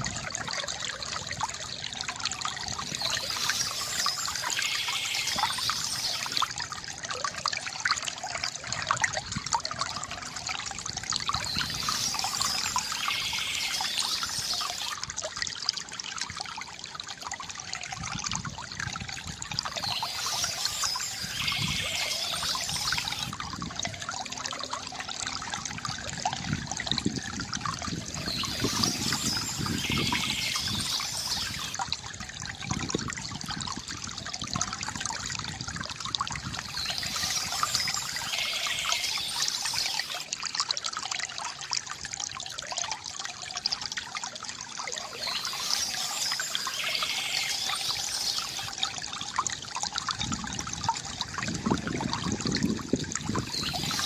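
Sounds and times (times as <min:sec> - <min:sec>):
water trickling from fountain: 0:00.0 - 0:54.0
splashing hiss: 0:03.0 - 0:06.5, 0:19.8 - 0:23.3, 0:45.0 - 0:48.7.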